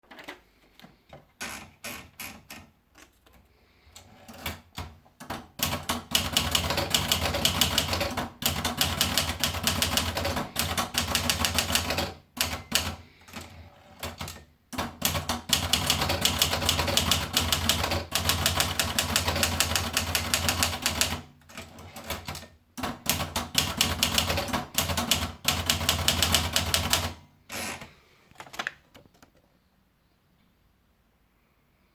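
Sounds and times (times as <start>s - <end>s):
manual typewriter keystrokes: 4.0s - 29.1s.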